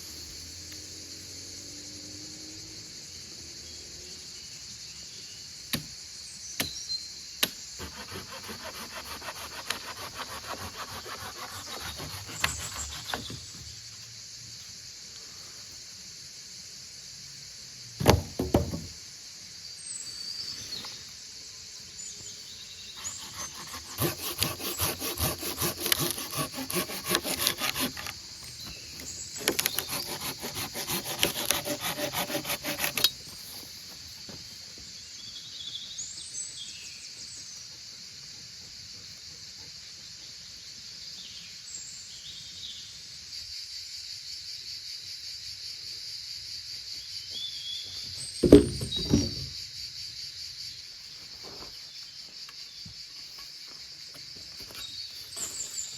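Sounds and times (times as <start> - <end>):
high insect chorus: 0.0 - 55.9
hand saw cutting wood: 7.8 - 13.5, 23.0 - 33.6, 48.4 - 49.5
loud knock: 48.4 - 49.5.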